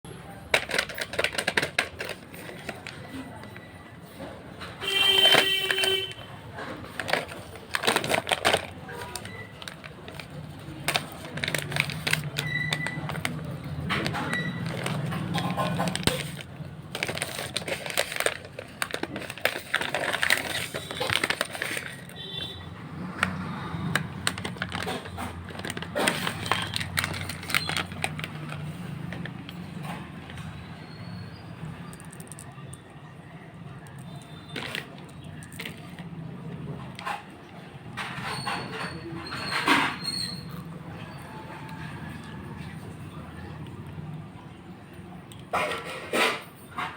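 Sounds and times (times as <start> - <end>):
small candies rattling: 0.4 - 3.8, 4.8 - 30.5, 31.8 - 32.6, 33.8 - 37.0
candy packaging crinkling: 0.4 - 30.6, 31.8 - 32.8, 33.8 - 37.2.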